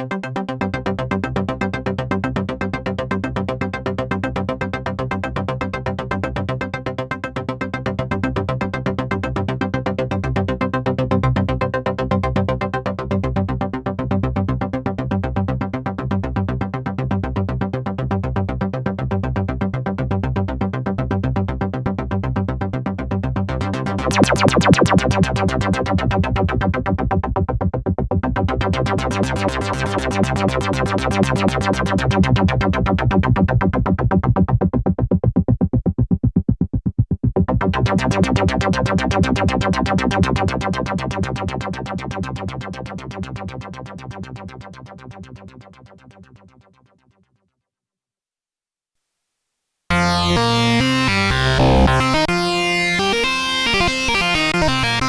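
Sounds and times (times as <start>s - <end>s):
synthesizer pulsing notes: 23.5s - 27.4s, 28.5s - 36.1s, 37.2s - 46.0s, 49.9s - 55.0s
sustained low synth tone: 23.6s - 27.3s, 28.5s - 45.6s, 49.9s - 55.0s.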